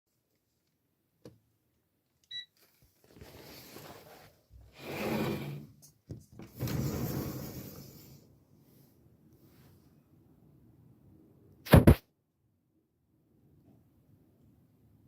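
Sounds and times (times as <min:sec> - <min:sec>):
sliding door rolling open: 0:04.8 - 0:05.7, 0:06.4 - 0:08.2.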